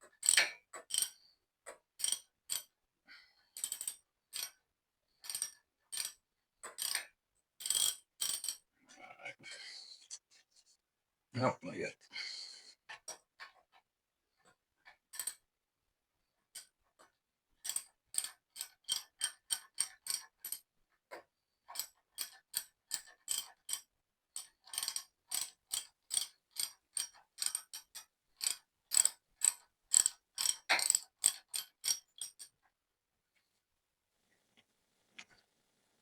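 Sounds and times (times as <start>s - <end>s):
socket ratchet clicking: 0.2s - 1.2s, 2.0s - 2.7s, 3.6s - 4.6s, 5.2s - 8.6s, 17.6s - 20.6s, 24.4s - 32.5s.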